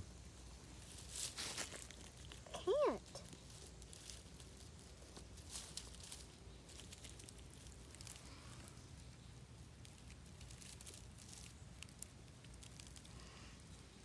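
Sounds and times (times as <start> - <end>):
small clicks and ticks: 9.8 - 13.8.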